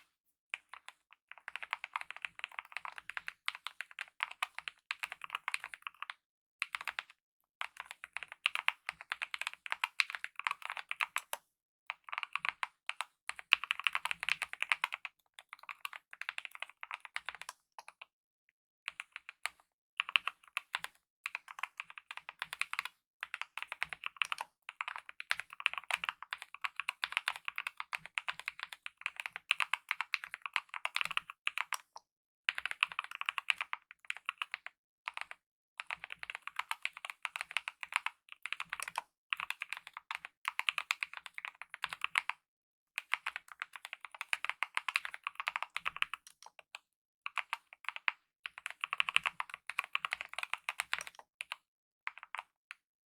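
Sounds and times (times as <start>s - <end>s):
mechanical keyboard typing: 0.6s - 11.4s, 12.0s - 18.0s, 18.9s - 42.4s, 43.0s - 52.5s.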